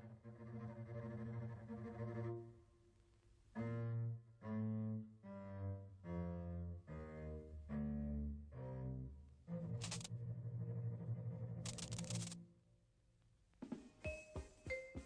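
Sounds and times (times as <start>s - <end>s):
low bowed strings: 0.0s - 2.6s, 3.5s - 12.1s.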